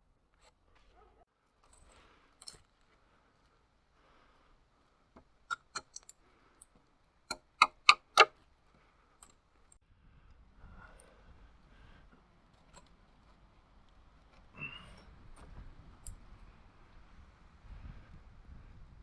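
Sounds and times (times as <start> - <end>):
wood being struck: 7.3 - 8.3.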